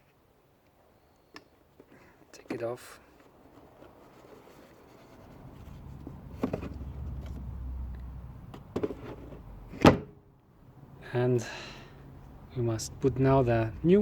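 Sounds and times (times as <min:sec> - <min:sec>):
air filter rustling: 0:01.8 - 0:07.4.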